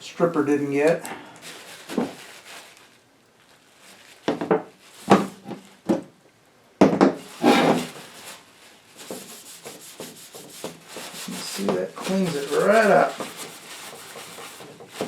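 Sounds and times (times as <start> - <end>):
rubbing and scraping: 7.2 - 15.0.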